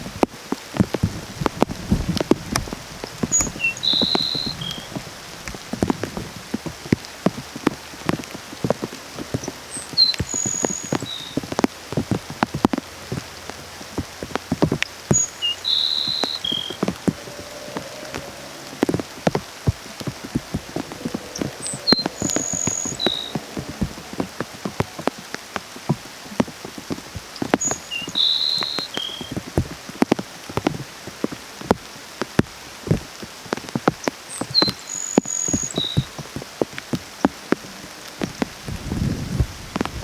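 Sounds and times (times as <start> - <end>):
rain dripping and pattering: 0.0 - 40.0
sparrow singing: 2.8 - 5.3, 9.3 - 11.5, 14.9 - 25.4, 27.4 - 29.4, 34.3 - 36.2.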